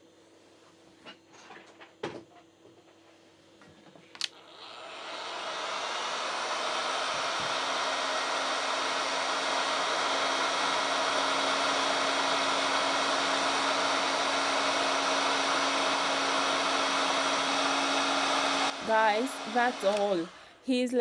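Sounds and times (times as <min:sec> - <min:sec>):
hot air gun blowing: 0:04.3 - 0:20.6.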